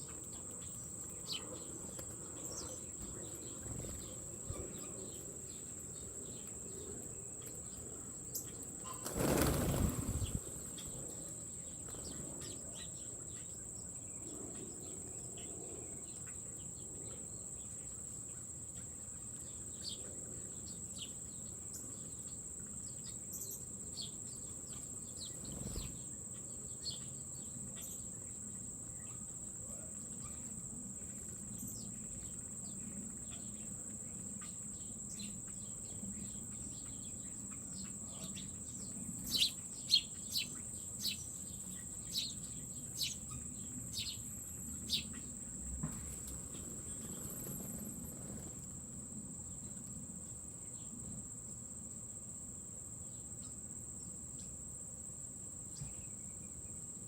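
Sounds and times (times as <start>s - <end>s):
birds chirping: 0.0s - 13.6s, 34.4s - 48.7s
insects trilling: 0.0s - 57.0s.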